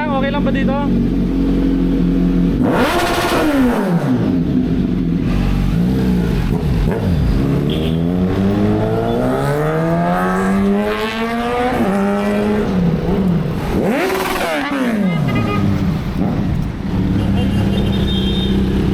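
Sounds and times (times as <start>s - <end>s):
motorcycle engine revving: 0.0s - 18.9s.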